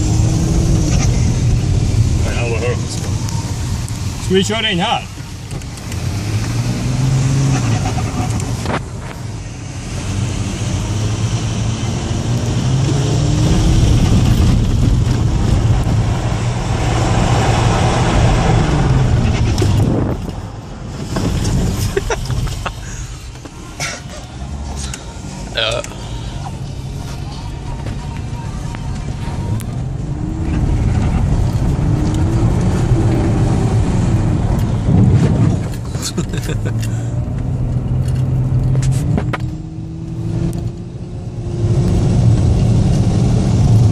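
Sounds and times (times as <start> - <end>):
diesel engine revving under load: 5.6 - 8.7.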